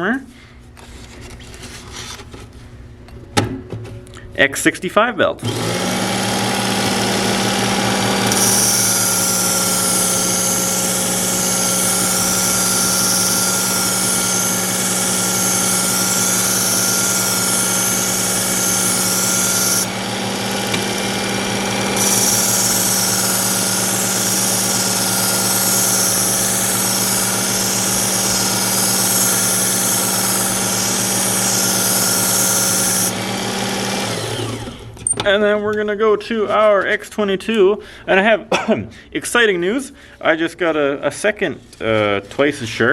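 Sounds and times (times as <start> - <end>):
belt sharpener grinding knife blade: 5.4 - 34.6.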